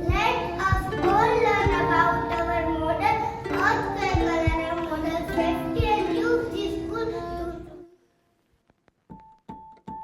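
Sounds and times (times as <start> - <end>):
music with high singing voice: 0.0 - 7.8.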